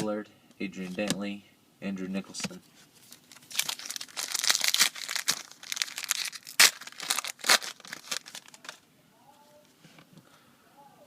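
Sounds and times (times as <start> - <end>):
wrapper being torn and crinkled: 3.1 - 8.8.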